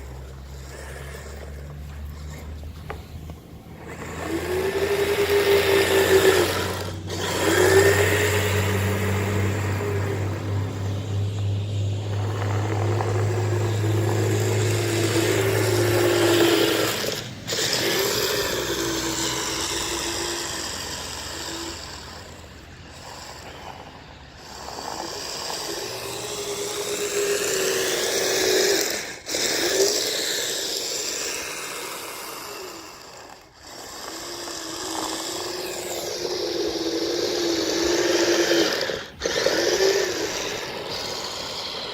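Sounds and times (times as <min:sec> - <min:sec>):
plowing snow: 0:00.0 - 0:32.0
electric motors whining: 0:00.0 - 0:41.9.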